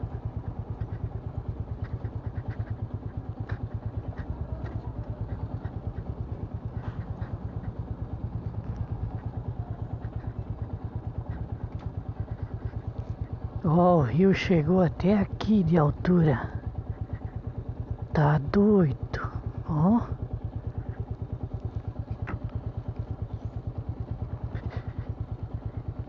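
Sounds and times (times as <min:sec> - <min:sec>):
motorcycle engine thumping: 0:00.0 - 0:13.6, 0:20.2 - 0:26.0
faint ticks: 0:00.1 - 0:13.6, 0:20.5 - 0:26.0.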